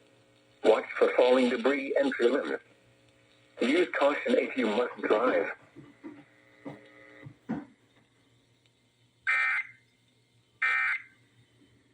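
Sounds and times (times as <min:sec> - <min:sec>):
buzzy digital data squawks: 0:09.2 - 0:09.9, 0:10.6 - 0:11.2.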